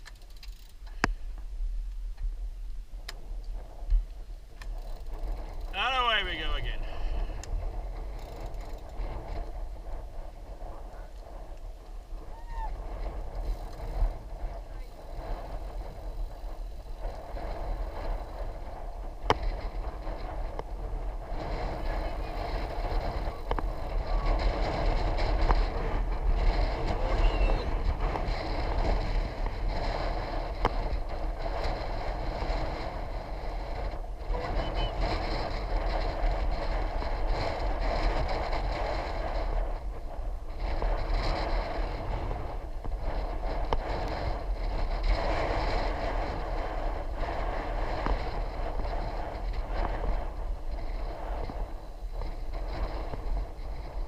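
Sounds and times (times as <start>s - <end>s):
wind on microphone: 0.0s - 54.0s
faint clicks: 3.1s - 5.7s.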